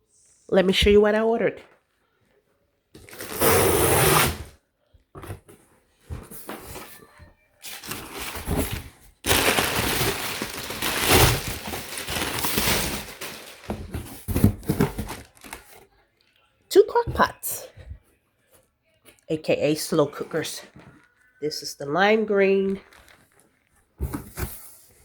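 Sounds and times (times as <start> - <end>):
cardboard scraping and rustling: 3.0 - 4.5, 5.2 - 7.1, 7.7 - 15.8, 24.0 - 25.0.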